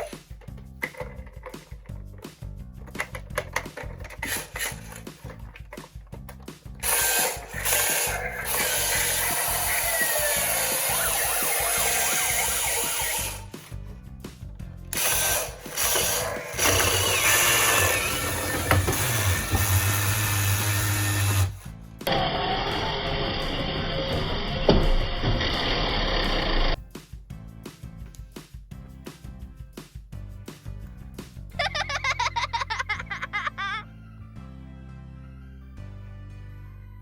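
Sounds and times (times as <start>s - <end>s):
light background music: 0.0s - 37.0s
toy cars whirring and rattling: 2.9s - 6.0s, 6.8s - 13.8s, 14.9s - 24.1s.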